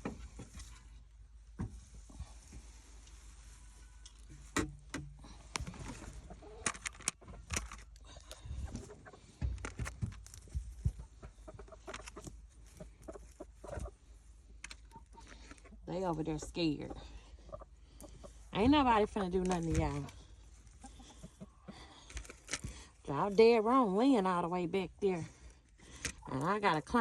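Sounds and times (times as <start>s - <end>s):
rustling: 0.0s - 16.4s, 17.0s - 23.8s
hens clucking: 5.8s - 9.8s, 10.5s - 27.0s.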